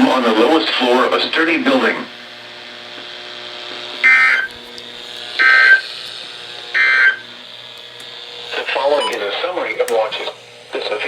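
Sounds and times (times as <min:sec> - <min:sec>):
radio hiss and hum: 0:02.8 - 0:11.0
buzzing digital data bursts: 0:05.4 - 0:05.9.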